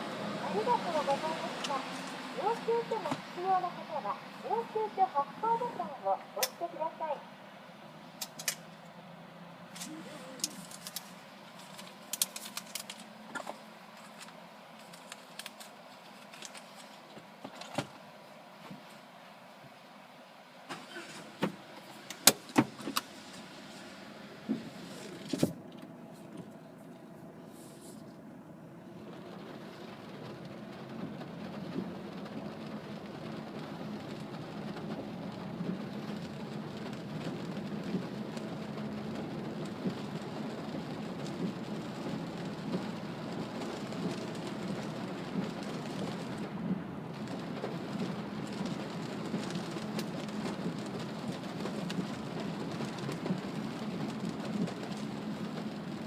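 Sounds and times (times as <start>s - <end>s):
rain on car body: 0.0s - 6.9s, 7.7s - 56.0s
tyres on wet road: 0.0s - 56.0s.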